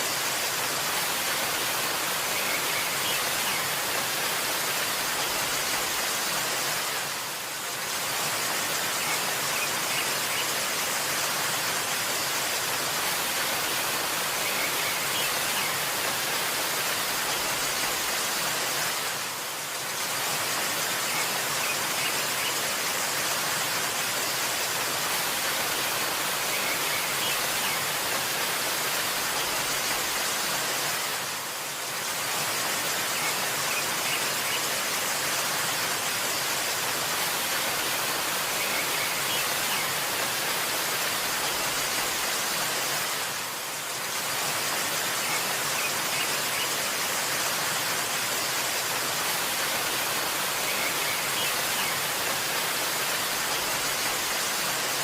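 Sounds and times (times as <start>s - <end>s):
waterfall rushing: 0.0s - 55.0s
faint bird chirps: 50.4s - 52.3s.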